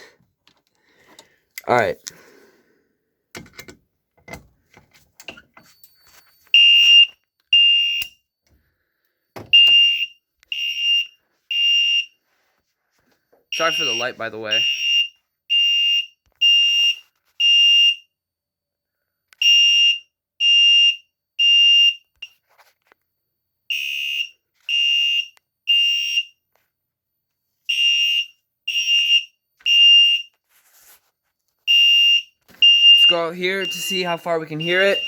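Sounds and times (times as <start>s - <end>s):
fire alarm beeping: 5.6s - 8.3s, 9.3s - 12.2s, 13.5s - 18.1s, 19.4s - 22.4s, 23.7s - 26.4s, 27.7s - 30.4s, 31.7s - 35.0s.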